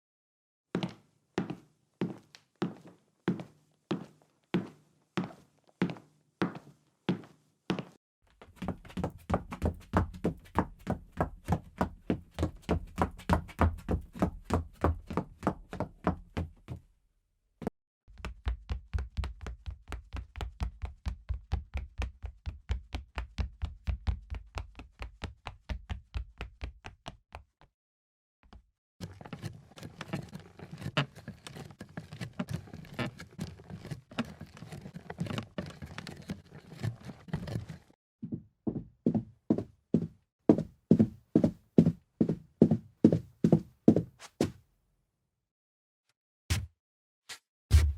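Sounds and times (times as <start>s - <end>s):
footsteps on wooden floor: 0.8s - 12.2s, 38.2s - 44.6s.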